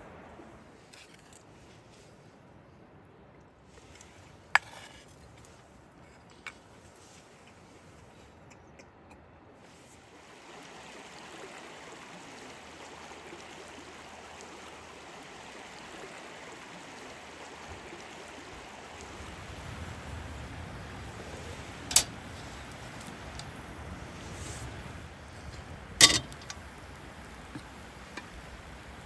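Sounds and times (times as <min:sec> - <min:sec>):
stream flowing: 0:09.7 - 0:29.0.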